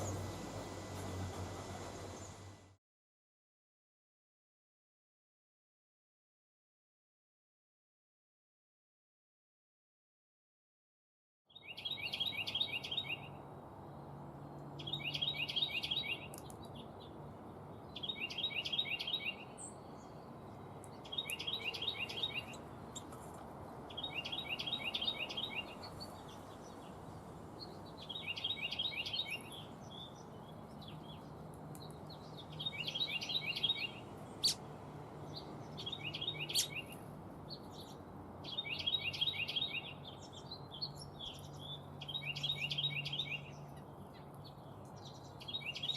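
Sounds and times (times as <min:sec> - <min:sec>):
songbird trilling: 0:21.0 - 0:23.1, 0:32.3 - 0:34.6, 0:35.3 - 0:43.5.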